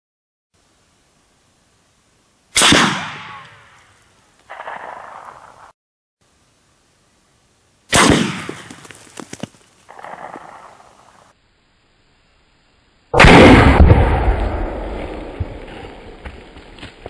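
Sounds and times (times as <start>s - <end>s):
rifle shots with echo: 2.6s - 3.7s, 4.5s - 5.7s, 7.9s - 8.7s, 9.9s - 10.8s, 13.2s - 15.9s.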